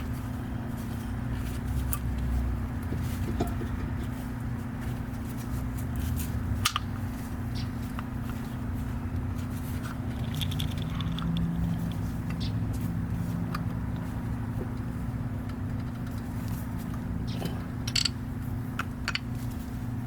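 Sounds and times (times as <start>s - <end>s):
steady low hum: 0.0s - 20.0s
metal brake parts clicking: 17.4s - 18.2s.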